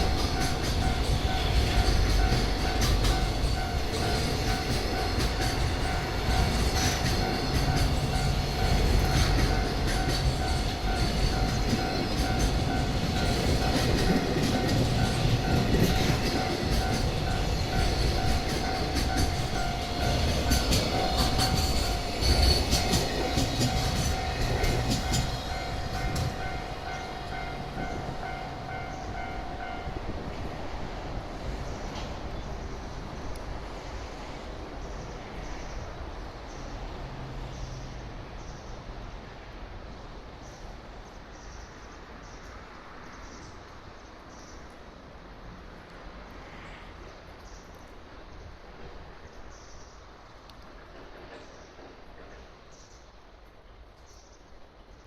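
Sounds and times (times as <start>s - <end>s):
level crossing warning bell: 0.0s - 30.1s
train wheels clattering on rails: 0.0s - 35.8s, 50.2s - 53.4s.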